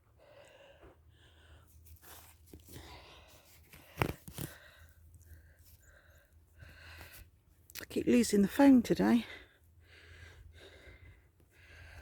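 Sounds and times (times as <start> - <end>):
phone rustling against microphone: 1.8 - 5.8.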